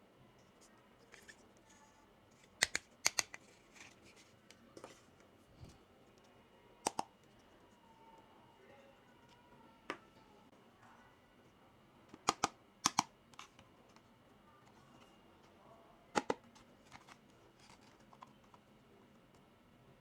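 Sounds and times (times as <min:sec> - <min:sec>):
plastic toy pieces clicking: 0:02.6 - 0:03.4.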